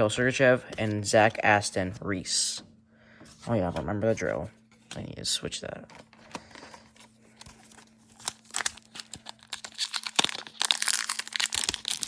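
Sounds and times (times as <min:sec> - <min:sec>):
foil wrapper crinkling and tearing: 0:07.6 - 0:12.0.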